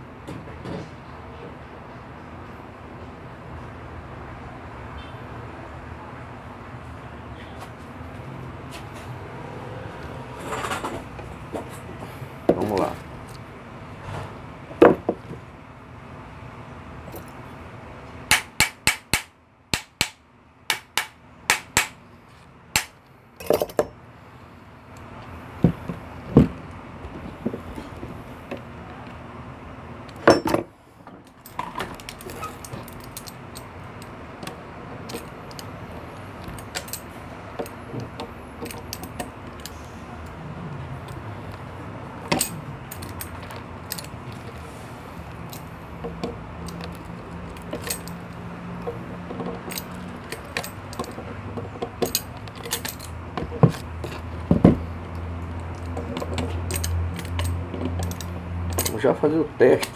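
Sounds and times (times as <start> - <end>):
metal tools clinking: 12.5 - 13.4, 17.1 - 17.5, 20.7 - 22.0, 22.8 - 23.9, 30.1 - 30.7, 31.3 - 59.9.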